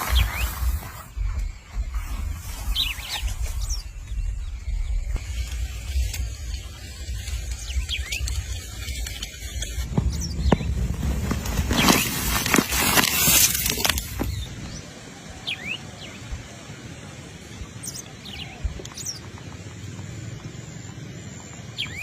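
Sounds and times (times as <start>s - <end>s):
loud crackly noise with clicks: 5.2s - 14.4s.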